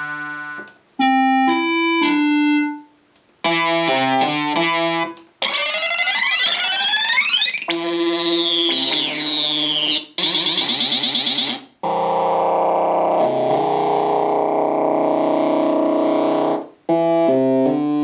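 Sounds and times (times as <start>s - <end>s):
synthesizer pitch sweeps: 5.4s - 18.0s.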